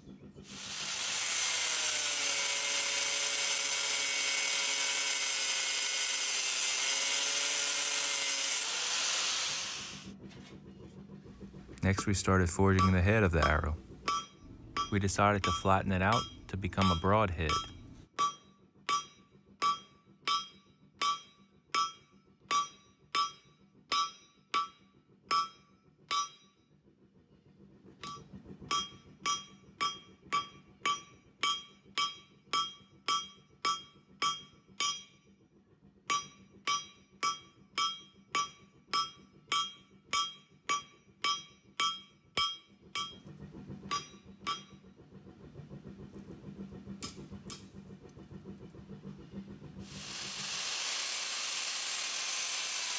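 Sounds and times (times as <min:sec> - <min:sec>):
low steady hum: 0:00.0 - 0:52.9
hammer ringing on anvil: 0:12.7 - 0:26.6, 0:28.0 - 0:35.2, 0:36.1 - 0:43.3, 0:43.9 - 0:44.8.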